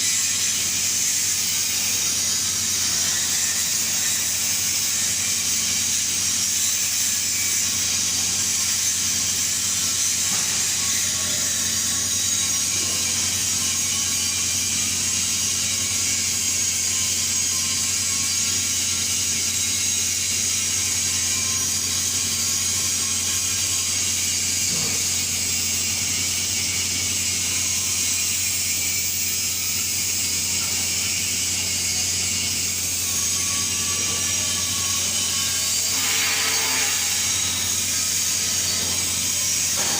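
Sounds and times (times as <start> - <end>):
welding arc hissing: 0.0 - 39.9.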